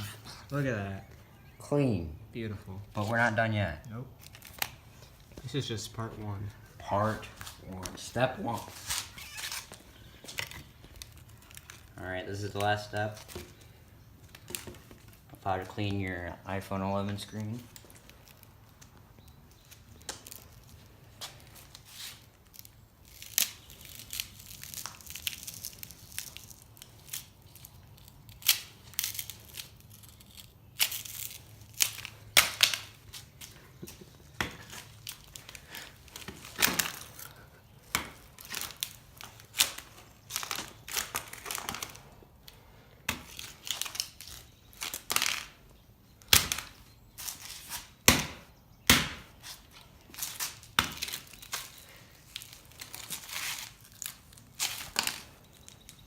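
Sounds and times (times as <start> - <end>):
phone glass crunching and cracking: 9.0 - 12.0, 22.2 - 45.6, 46.2 - 47.4, 50.1 - 56.0.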